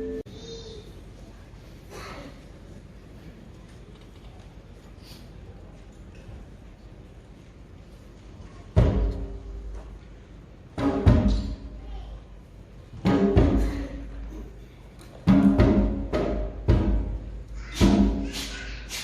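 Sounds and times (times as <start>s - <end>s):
percussion ensemble chord hits: 0.0s - 0.2s.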